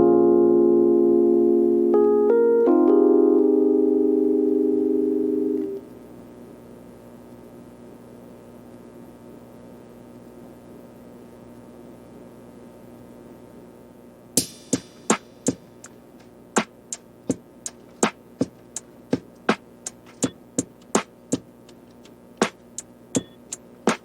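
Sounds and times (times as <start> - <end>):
drum machine beat: 14.4 - 24.0.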